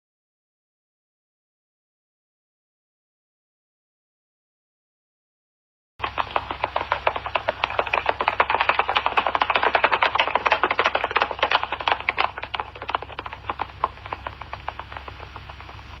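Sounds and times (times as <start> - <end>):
horse hoofbeats galloping: 6.0 - 16.0
steady low hum: 6.0 - 16.0.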